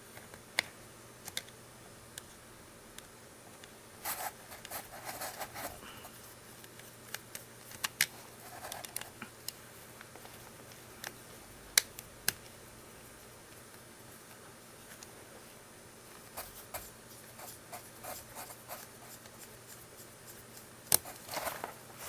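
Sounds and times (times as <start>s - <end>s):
plastic parts rustling: 21.0s - 22.0s.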